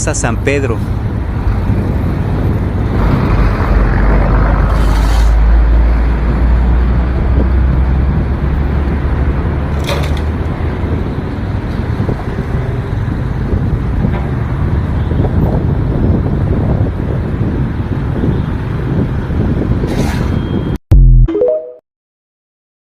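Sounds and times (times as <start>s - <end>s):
road traffic passing: 0.0s - 20.8s
large vehicle rumbling past: 0.8s - 17.5s.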